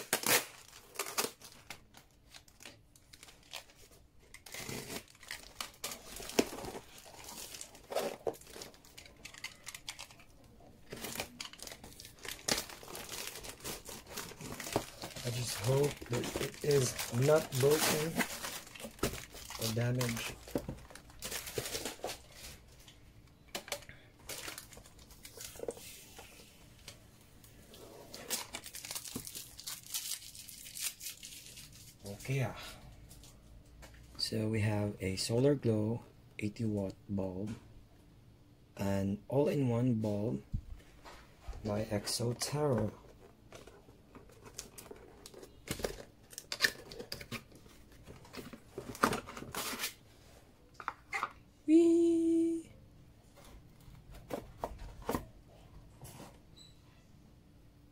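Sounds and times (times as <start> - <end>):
packaging being torn open: 0.0 - 1.8, 4.4 - 10.2, 11.0 - 20.5, 28.2 - 31.8.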